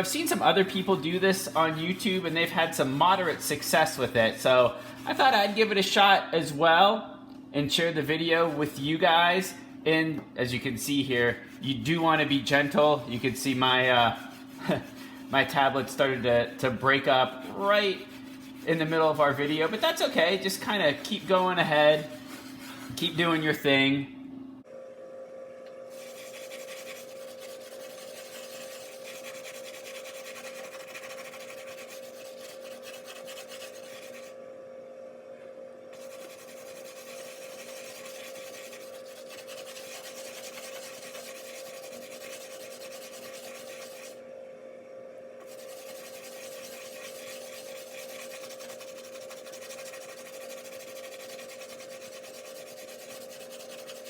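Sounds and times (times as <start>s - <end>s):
steady hum: 0.0s - 54.0s
gritty rubbing on glass: 11.5s - 23.3s, 25.9s - 34.3s, 36.0s - 44.2s, 45.4s - 54.0s.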